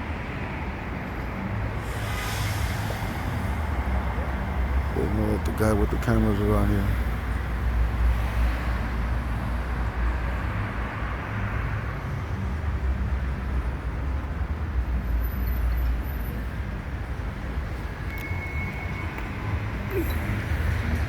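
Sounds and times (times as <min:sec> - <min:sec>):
street traffic rumble: 0:00.0 - 0:21.0.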